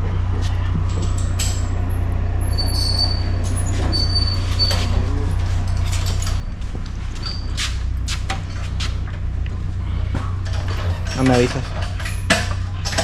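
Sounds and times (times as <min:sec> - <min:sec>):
low machine hum: 0:00.0 - 0:13.0
short high squeaks: 0:02.4 - 0:05.1.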